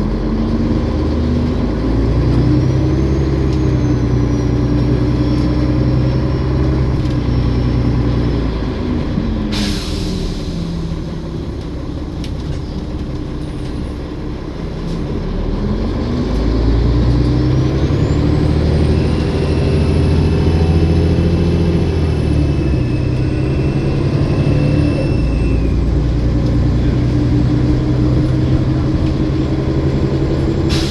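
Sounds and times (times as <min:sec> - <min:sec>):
bus engine: 0:00.0 - 0:30.9
air brake hiss: 0:09.5 - 0:11.0, 0:30.7 - 0:30.9.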